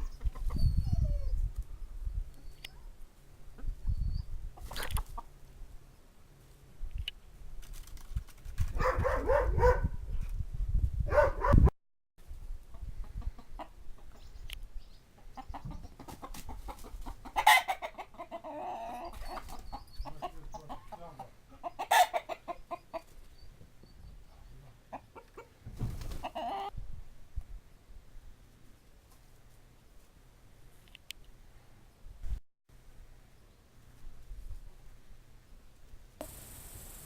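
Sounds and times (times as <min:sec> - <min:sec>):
chickens clucking: 0:00.0 - 0:00.7, 0:04.5 - 0:05.4, 0:12.6 - 0:26.7.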